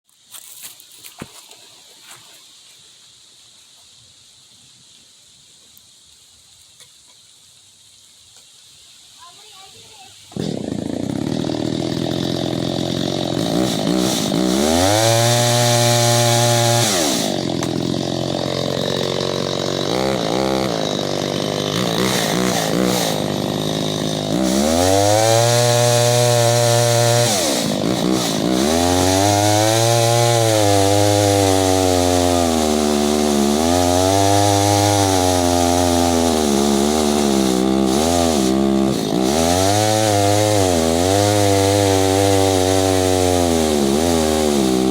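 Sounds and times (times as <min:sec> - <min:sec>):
chainsaw revving: 0:10.3 - 0:44.9.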